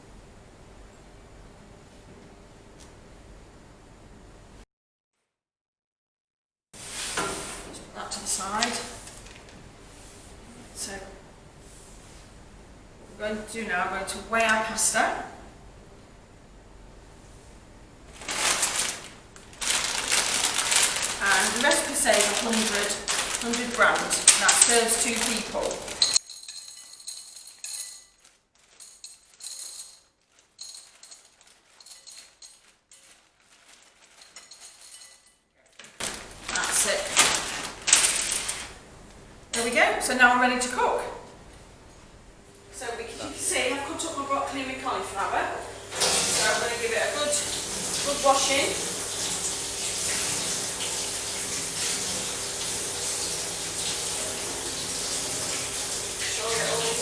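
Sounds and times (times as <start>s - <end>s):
kitchen tap running: 18.1s - 26.2s, 45.0s - 57.0s
dried pasta rattling as poured: 18.1s - 35.2s.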